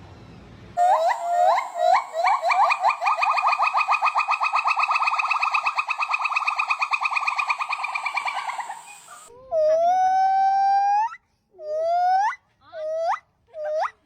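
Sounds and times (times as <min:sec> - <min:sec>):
animal trilling call: 0:00.8 - 0:10.4
long rising animal call: 0:00.8 - 0:10.9.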